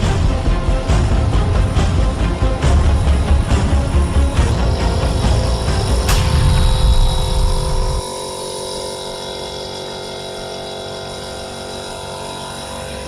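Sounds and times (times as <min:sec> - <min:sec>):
loud low rumble: 0:00.0 - 0:09.1
compressor and pump hum: 0:00.0 - 0:13.0.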